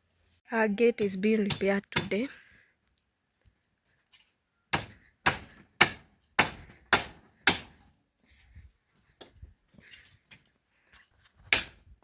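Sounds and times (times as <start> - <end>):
hammer strikes: 4.8 - 7.8.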